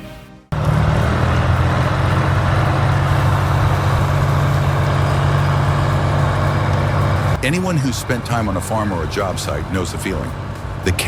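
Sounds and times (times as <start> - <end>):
large vehicle engine running: 0.5 - 11.0.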